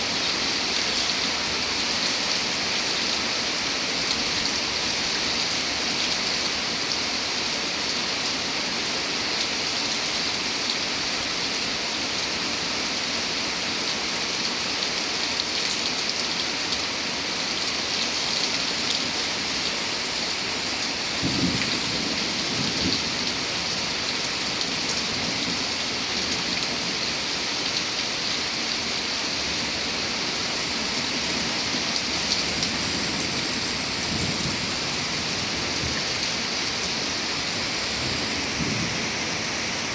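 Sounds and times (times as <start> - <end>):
heavy rain falling: 0.0 - 39.9
low rumbles of thunder: 21.2 - 23.5, 37.9 - 39.6.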